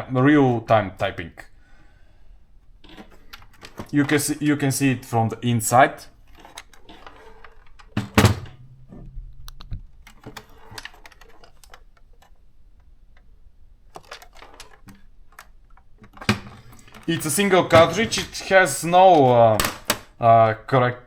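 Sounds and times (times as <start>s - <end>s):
plastic clicks and knocks: 2.8s - 4.2s, 6.3s - 20.2s.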